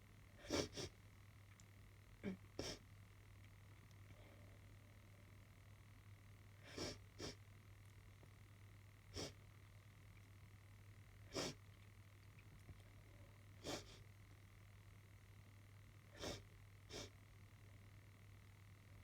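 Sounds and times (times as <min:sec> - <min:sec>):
person sniffing through nose: 0:00.4 - 0:00.9, 0:06.7 - 0:07.4, 0:09.2 - 0:09.4, 0:11.3 - 0:11.6, 0:13.6 - 0:14.0, 0:16.2 - 0:17.1.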